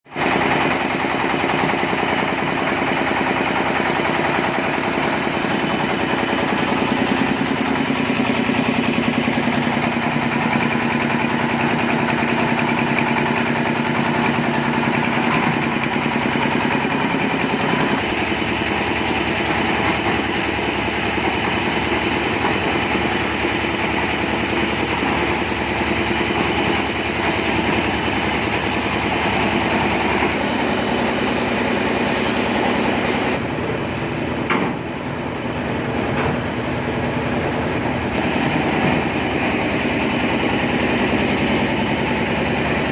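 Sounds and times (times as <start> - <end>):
concrete mixer engine idling: 0.1 - 42.9.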